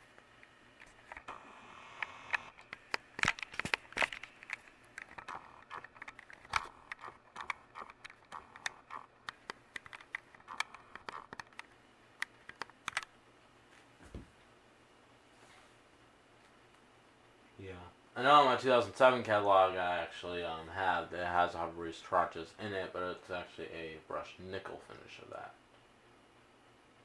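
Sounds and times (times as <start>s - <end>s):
clicks and crackles: 0.0s - 13.9s
ceiling fan humming: 0.0s - 27.0s.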